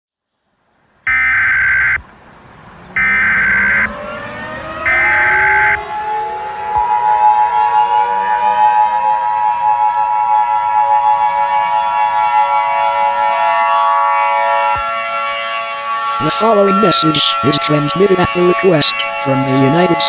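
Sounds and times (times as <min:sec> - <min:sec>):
digital data tones: 0:01.1 - 0:02.0, 0:03.0 - 0:03.9, 0:16.2 - 0:20.0
emergency siren winding up: 0:01.1 - 0:02.0, 0:02.8 - 0:20.0.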